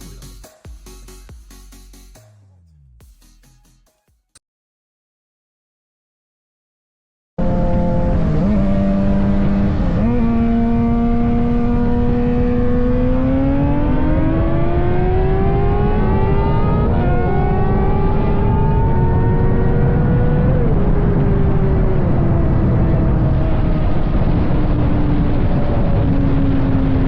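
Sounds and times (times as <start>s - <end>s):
motorcycle engine accelerating: 7.4s - 27.0s.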